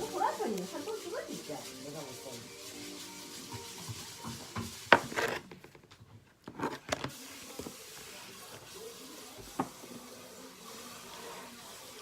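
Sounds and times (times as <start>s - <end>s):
utensils clicking against frying pan: 0.0s - 2.0s.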